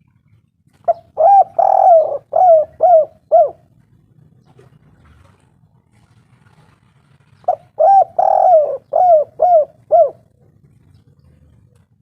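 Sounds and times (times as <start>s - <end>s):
dove cooing: 0.8s - 3.8s, 7.4s - 12.0s.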